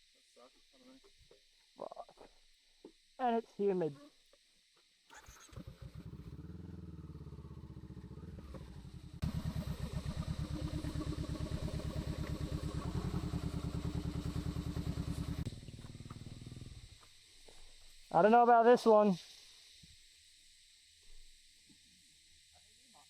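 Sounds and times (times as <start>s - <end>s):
motorcycle engine running at low revs: 5.2s - 17.1s.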